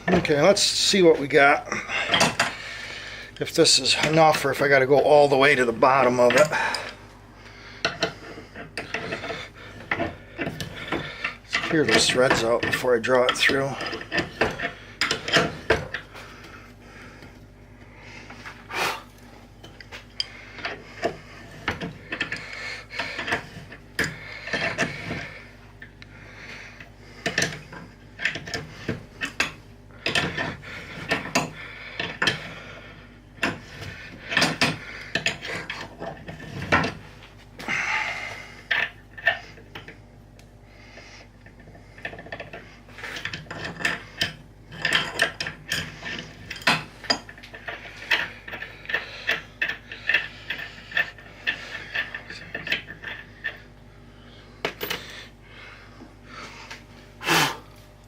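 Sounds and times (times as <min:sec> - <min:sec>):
metal clicks and creaks: 0:07.8 - 0:16.1.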